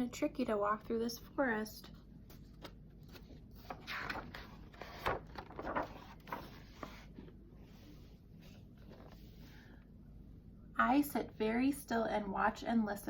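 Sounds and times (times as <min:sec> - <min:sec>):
paper pages rustling: 0:02.3 - 0:09.4.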